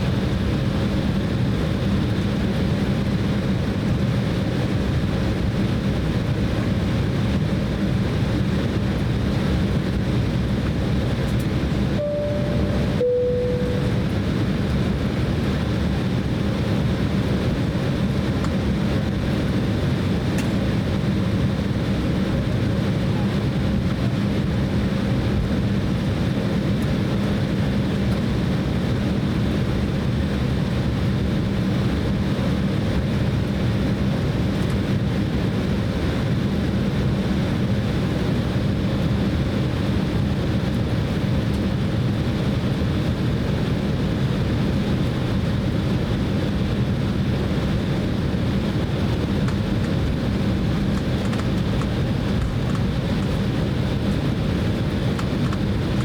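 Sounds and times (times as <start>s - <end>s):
jet engines humming in cabin: 0.0s - 56.0s.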